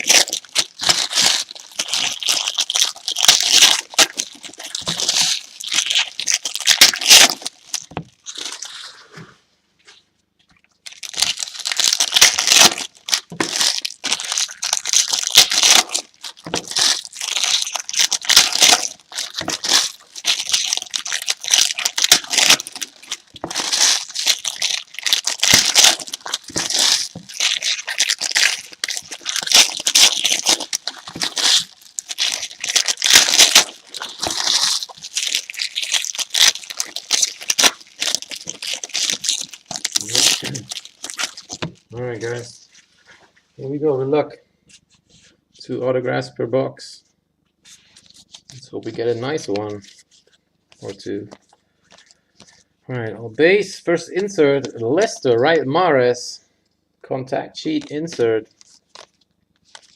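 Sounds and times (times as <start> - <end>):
plastic wrapping crinkling and tearing: 0.0 - 9.0, 10.7 - 43.3, 47.7 - 52.7, 57.6 - 59.9.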